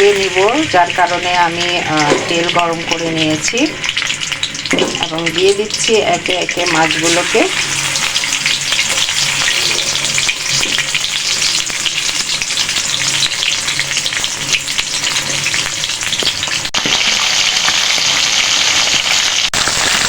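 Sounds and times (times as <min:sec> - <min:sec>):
fish sizzling in hot oil: 0:00.0 - 0:20.0.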